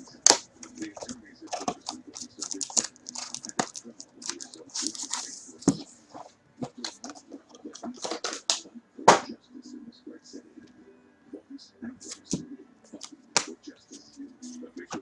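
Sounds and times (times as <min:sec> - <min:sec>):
wrapping crinkling and tearing: 0:00.7 - 0:05.4.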